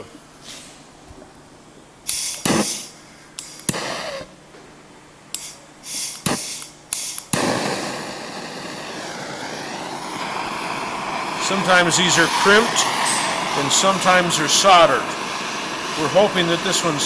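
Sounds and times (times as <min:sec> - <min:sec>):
gas torch hissing: 0:02.0 - 0:04.4, 0:05.3 - 0:17.0
torch flame burning: 0:02.1 - 0:04.4, 0:05.3 - 0:17.0.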